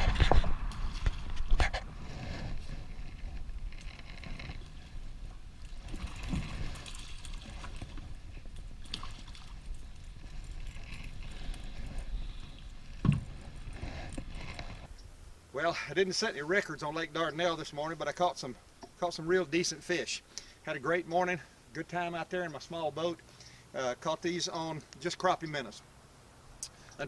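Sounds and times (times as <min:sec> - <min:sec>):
low wind rumble: 0:00.0 - 0:15.6
water lapping around a boat: 0:01.7 - 0:14.9.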